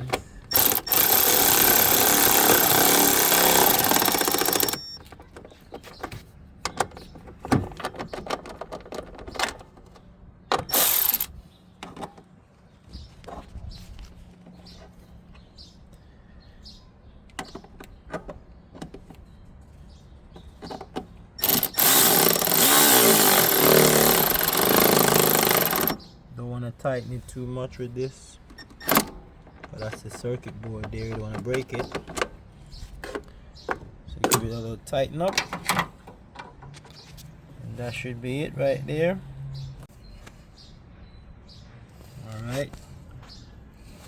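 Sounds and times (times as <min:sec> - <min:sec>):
power drill driving bolts: 0:00.0 - 0:05.2, 0:10.5 - 0:11.4, 0:21.4 - 0:26.1, 0:28.6 - 0:29.2
tool and parts clicking and knocking: 0:00.0 - 0:12.3, 0:20.3 - 0:26.1, 0:28.5 - 0:32.4, 0:33.0 - 0:34.6, 0:35.3 - 0:37.0.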